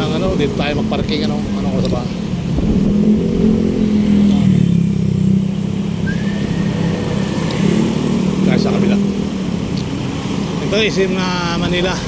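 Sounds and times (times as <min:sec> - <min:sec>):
vehicle engine humming: 0:00.0 - 0:12.0
thin high tone: 0:06.0 - 0:08.2.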